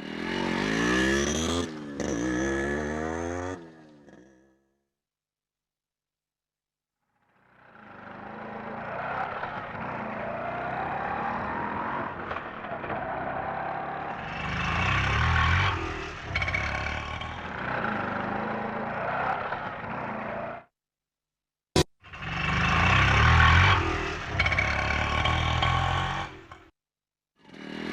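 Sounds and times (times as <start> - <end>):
autorickshaw engine running: 13.2 - 19.0, 22.1 - 26.6.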